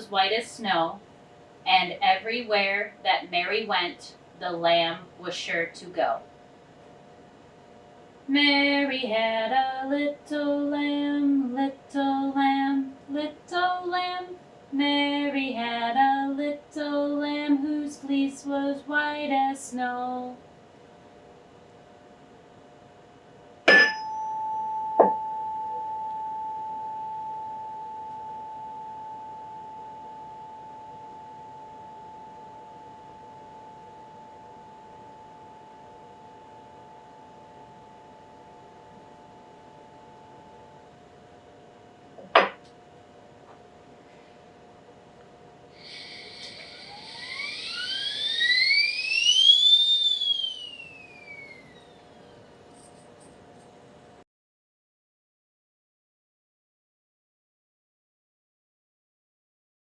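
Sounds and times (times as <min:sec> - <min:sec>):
tuning fork ringing: 0:23.7 - 0:41.4, 0:45.8 - 0:53.8
hiss: 0:45.8 - 0:47.5
tone sweeping in pitch: 0:45.9 - 0:52.4.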